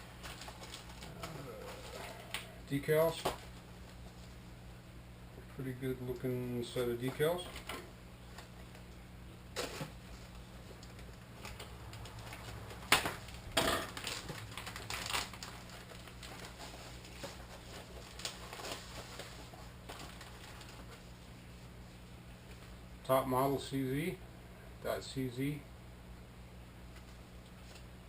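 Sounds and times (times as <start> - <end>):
packaging clicks and rustles: 0.0 - 4.0, 9.6 - 21.0
low steady hum: 0.0 - 28.0.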